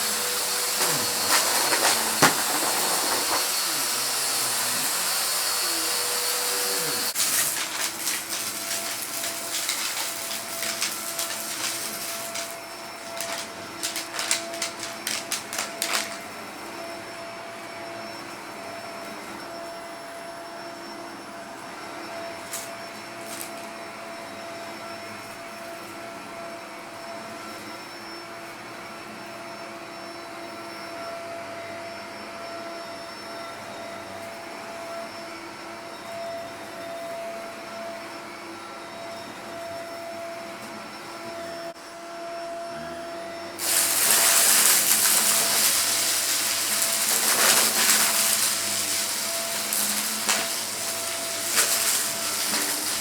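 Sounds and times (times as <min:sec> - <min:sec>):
vacuum sucking up crackling debris: 0:00.0 - 0:16.3, 0:43.6 - 0:53.0
vacuum cleaner whining: 0:00.0 - 0:53.0.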